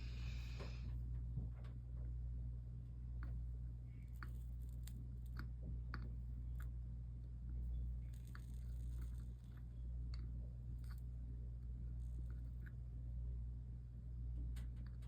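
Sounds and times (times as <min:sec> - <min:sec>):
steady low hum: 0:00.0 - 0:15.0
solder sizzling and crackling: 0:02.7 - 0:13.0.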